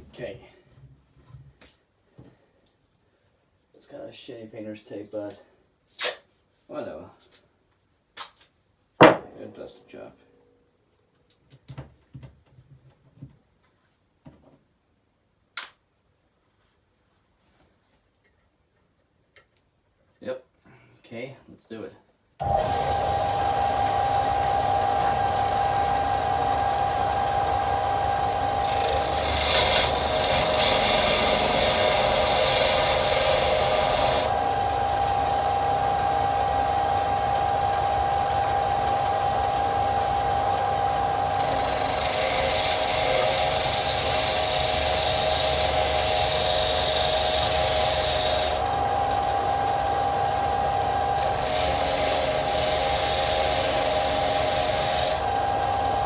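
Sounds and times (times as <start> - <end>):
disc sander motor whine: 22.4 - 56.0
steel blade grinding on sander: 24.1 - 36.6, 40.0 - 49.5, 50.5 - 56.0.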